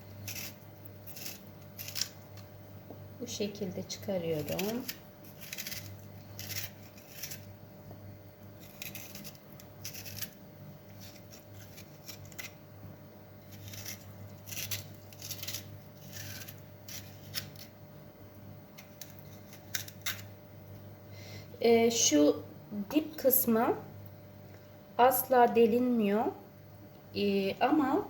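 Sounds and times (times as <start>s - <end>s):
metal corer scraping radish: 0.0s - 2.4s, 3.9s - 7.5s, 8.6s - 12.6s, 13.4s - 17.8s, 18.8s - 20.3s.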